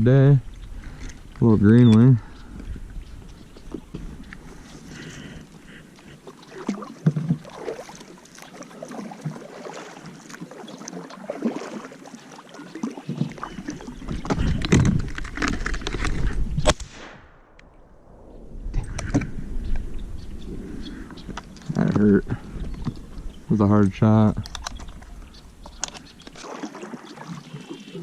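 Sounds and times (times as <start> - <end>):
reeds rustling against boat: 0.5 - 16.7
paddle and hull knocks: 6.6 - 8.1.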